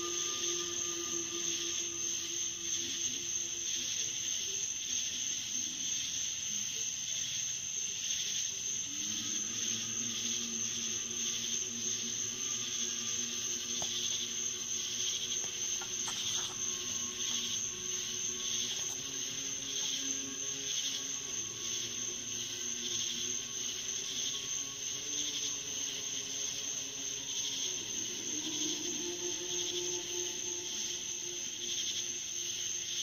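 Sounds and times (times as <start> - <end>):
night insects chirping: 0.0 - 33.0.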